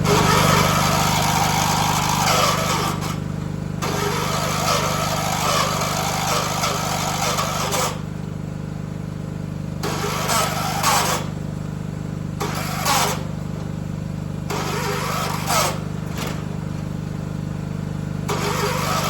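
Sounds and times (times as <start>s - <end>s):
lawn tractor engine idling: 0.0s - 19.0s.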